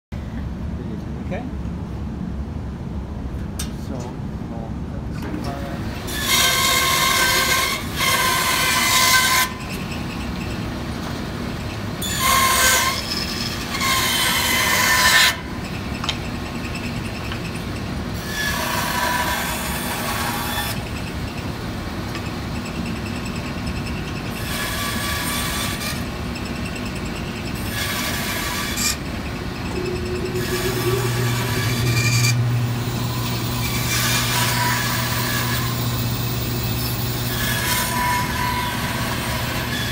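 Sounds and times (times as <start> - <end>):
bandsaw blade cutting wood: 6.2 - 9.6, 29.7 - 39.9
bandsaw motor hum: 26.9 - 39.9
low steady hum: 29.0 - 37.3.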